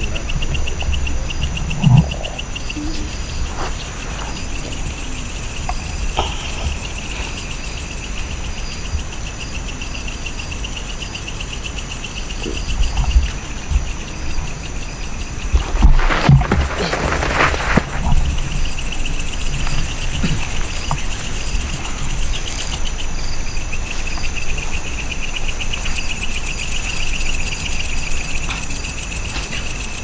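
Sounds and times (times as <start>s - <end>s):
crickets chirping: 0.0s - 30.0s.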